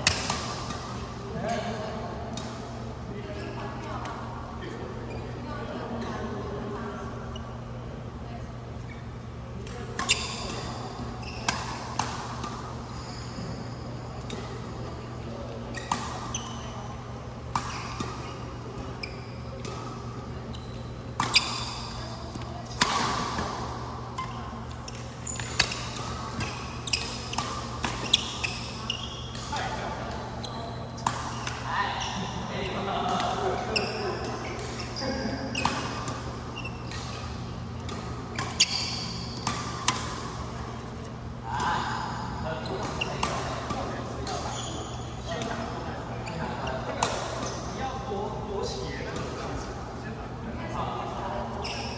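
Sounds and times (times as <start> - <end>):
shoes squeaking on hall floor: 5.0 - 7.7, 8.8 - 49.8, 50.6 - 51.9
rackets striking shuttlecock: 21.2 - 30.3.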